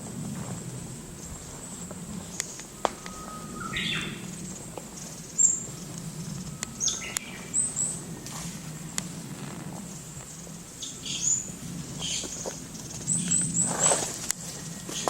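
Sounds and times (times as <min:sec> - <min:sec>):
steady low hum: 0:00.0 - 0:15.0
flycatcher calling: 0:01.1 - 0:15.0
high bird chirps: 0:02.3 - 0:08.0.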